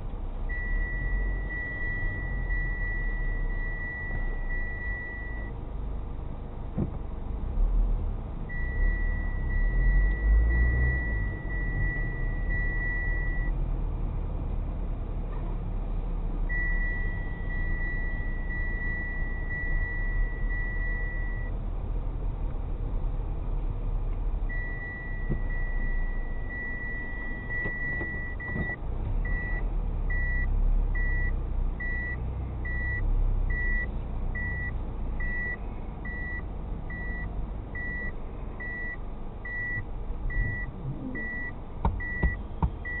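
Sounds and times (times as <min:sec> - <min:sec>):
engine and road rumble: 0:00.0 - 0:43.0
parking sensor tone and beeps: 0:00.5 - 0:05.6, 0:08.5 - 0:13.6, 0:16.5 - 0:21.5, 0:24.5 - 0:43.0.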